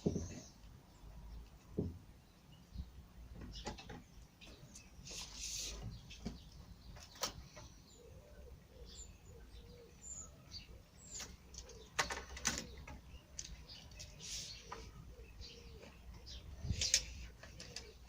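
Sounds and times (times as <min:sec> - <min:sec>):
bird cooing: 0:07.9 - 0:13.0, 0:14.1 - 0:18.0.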